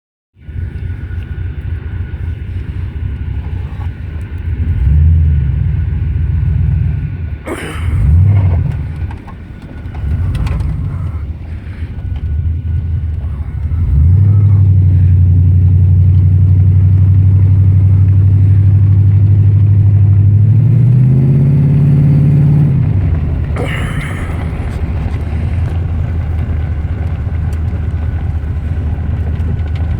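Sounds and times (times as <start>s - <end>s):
car engine revving: 0.5s - 29.9s
engine knock: 22.8s - 29.9s.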